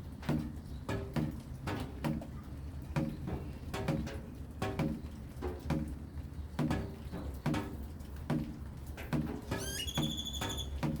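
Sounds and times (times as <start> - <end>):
high whistle: 9.6 - 10.7.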